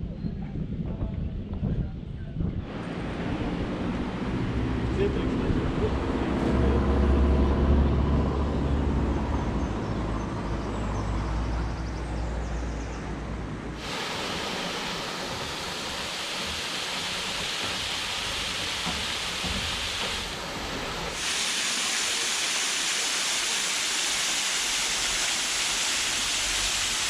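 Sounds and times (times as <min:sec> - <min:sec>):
waterfall rushing hiss: 0:02.6 - 0:05.0, 0:13.8 - 0:27.0.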